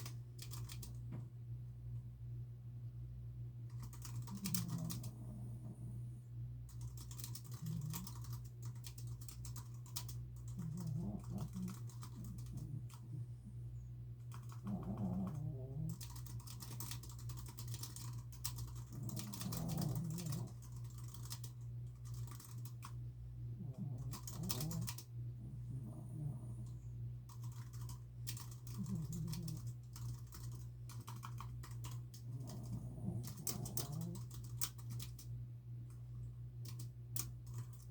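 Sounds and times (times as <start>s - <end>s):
typing on computer keyboard: 0.0s - 1.0s, 3.7s - 5.4s, 6.7s - 13.1s, 14.2s - 22.9s, 23.8s - 25.1s, 27.3s - 35.3s, 36.6s - 37.9s
steady low hum: 0.0s - 37.9s
dog snoring: 4.2s - 6.1s, 7.4s - 8.3s, 10.5s - 13.6s, 14.4s - 16.3s, 18.8s - 20.7s, 23.6s - 26.9s, 28.7s - 29.8s, 32.3s - 34.4s.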